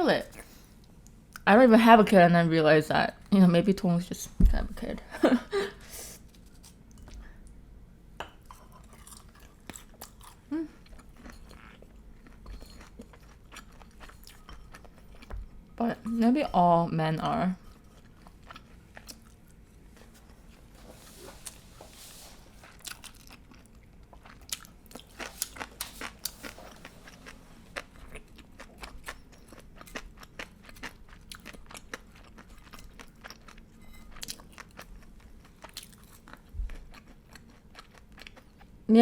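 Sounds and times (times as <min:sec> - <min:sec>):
crunchy chewing of fried food: 0:08.6 - 0:15.6, 0:17.7 - 0:38.8.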